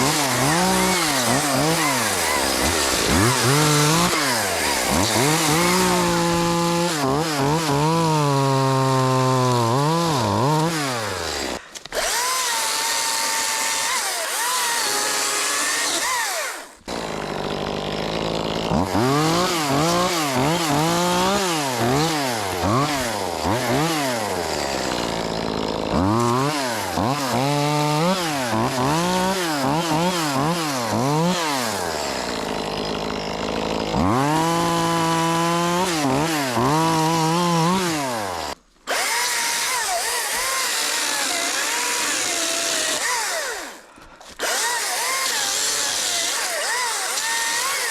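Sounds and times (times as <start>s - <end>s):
chainsaw cutting wood: 0.0s - 47.9s.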